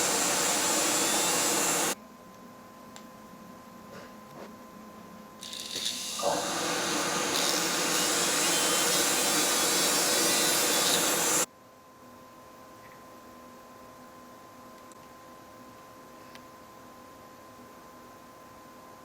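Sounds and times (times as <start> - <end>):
dental lab machine hissing: 0.0 - 2.0, 5.5 - 11.5.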